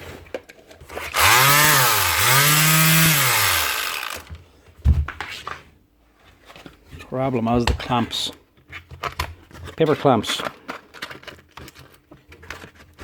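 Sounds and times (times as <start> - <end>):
orbital sander humming: 1.1 - 4.3.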